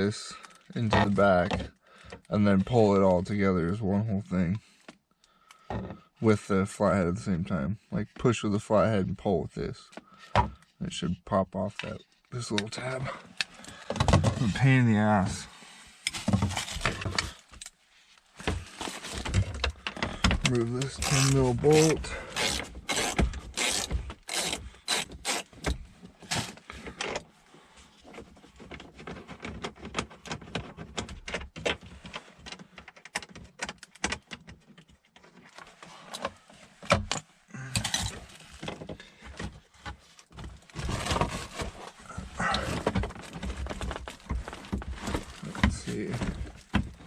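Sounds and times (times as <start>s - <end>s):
tools and parts clattering: 37.0s - 47.0s.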